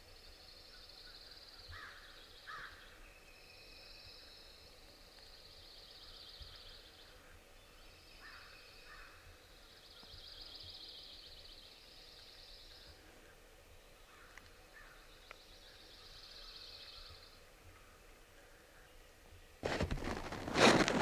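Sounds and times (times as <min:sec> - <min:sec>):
woodland ambience: 0:19.6 - 0:21.0.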